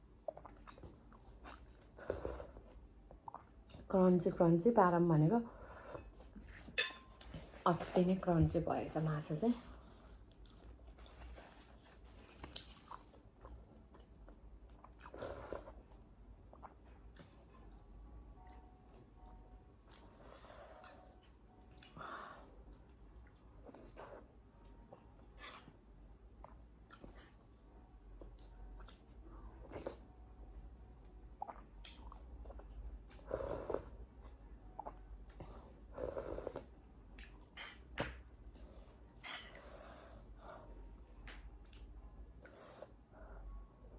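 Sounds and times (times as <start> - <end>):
person chewing crunchy food: 9.8 - 15.9.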